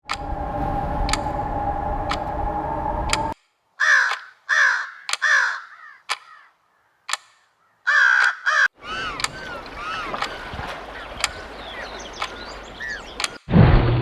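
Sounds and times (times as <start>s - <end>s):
steady rumble with high tone: 0.0s - 3.4s
sharp ticks: 1.1s - 1.3s, 3.1s - 4.4s, 5.0s - 6.4s, 7.1s - 7.5s, 8.2s - 8.5s, 9.2s - 9.4s, 11.2s - 13.5s
bird harsh falling calls: 3.8s - 13.5s.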